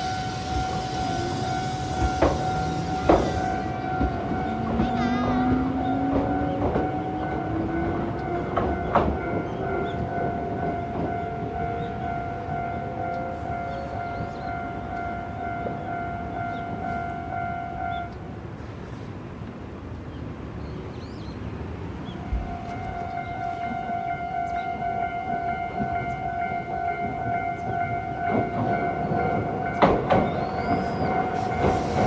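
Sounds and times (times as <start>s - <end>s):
train motor whine: 0.0s - 9.2s, 29.8s - 32.0s
wheels clacking over rail joints: 0.0s - 16.9s, 21.7s - 32.0s
level crossing alarm ringing: 0.0s - 18.4s, 22.2s - 32.0s
train running rumble: 0.0s - 32.0s.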